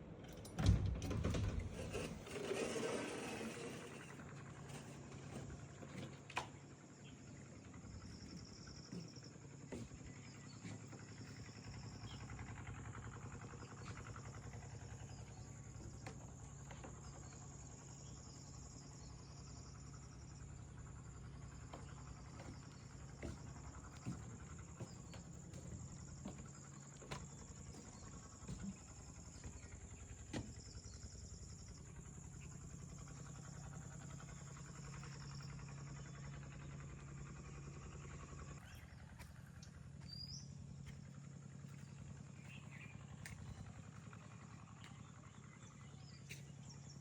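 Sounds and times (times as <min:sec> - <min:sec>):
low steady hum: 0:00.0 - 0:47.0
insects chirring: 0:13.5 - 0:38.6
bird chirp: 0:38.5 - 0:47.0.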